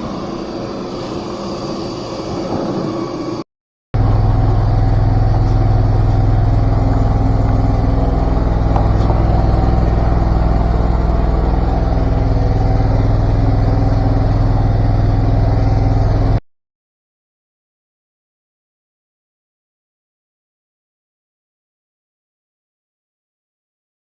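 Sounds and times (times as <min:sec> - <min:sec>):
drain-jetting machine engine humming: 0:00.0 - 0:03.4, 0:04.0 - 0:16.4.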